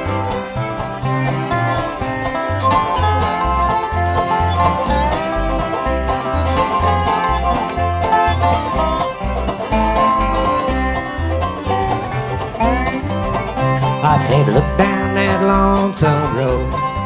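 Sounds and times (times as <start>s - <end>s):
banjo: 0.0s - 17.0s
bass line: 0.0s - 17.0s
guitar: 0.0s - 17.0s.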